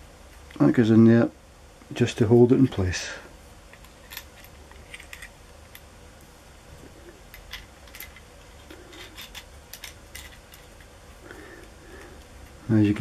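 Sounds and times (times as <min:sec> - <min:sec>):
faint low hum: 0:00.0 - 0:13.0
small parts clicking and tapping: 0:03.7 - 0:05.9, 0:07.3 - 0:11.0.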